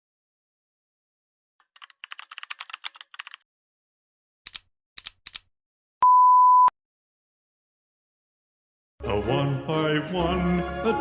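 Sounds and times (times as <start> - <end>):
light typing clicks: 4.5 - 5.5
high-pitched beep: 6.0 - 6.7.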